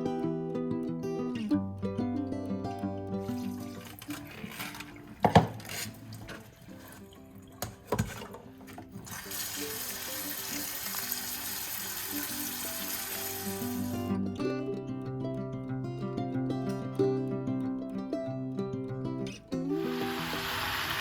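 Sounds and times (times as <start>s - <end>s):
water running into sink: 3.4s - 14.0s, 19.8s - 21.0s.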